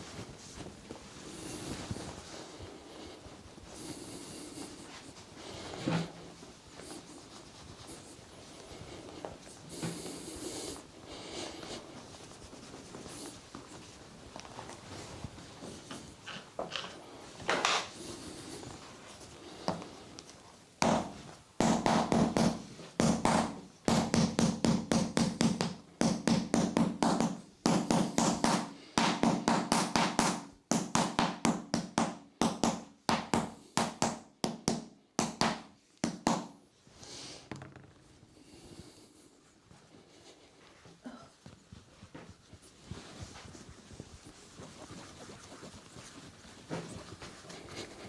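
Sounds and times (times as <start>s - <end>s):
percussive strikes on a body: 20.8s - 36.6s.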